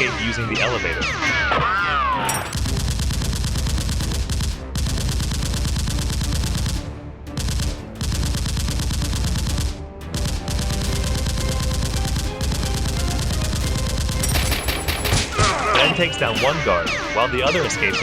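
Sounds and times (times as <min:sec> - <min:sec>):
rapid automatic gunfire: 0:02.5 - 0:15.4.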